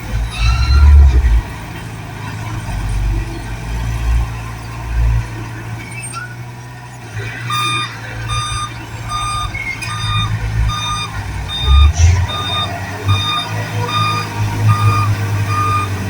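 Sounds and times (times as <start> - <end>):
low engine rumble: 0.0 - 16.0
reversing alarm beeping: 0.2 - 1.4, 7.1 - 16.0.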